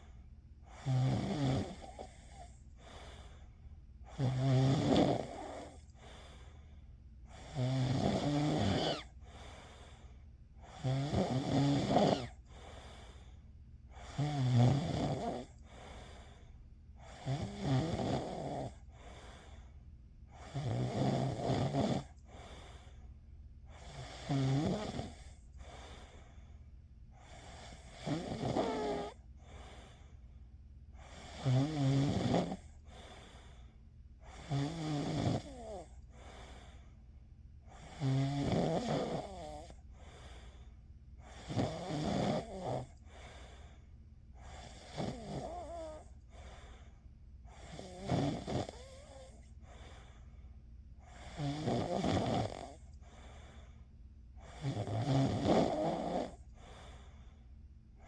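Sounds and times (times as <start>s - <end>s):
faint breaths: 0.0s - 4.4s, 5.2s - 7.6s, 8.2s - 10.9s, 12.2s - 14.4s, 15.4s - 17.4s, 18.6s - 20.6s, 21.6s - 24.4s, 25.0s - 31.8s, 32.4s - 34.8s, 35.4s - 55.0s, 55.6s - 58.0s
person snoring: 0.7s - 3.4s, 4.1s - 6.2s, 7.3s - 9.5s, 10.7s - 12.6s, 14.0s - 16.3s, 17.0s - 18.9s, 20.4s - 22.6s, 23.8s - 25.9s, 27.2s - 29.7s, 31.0s - 33.2s, 34.3s - 36.6s, 37.7s - 39.8s, 41.2s - 43.2s, 44.4s - 46.5s, 47.5s - 49.9s, 51.1s - 52.9s, 54.4s - 57.0s.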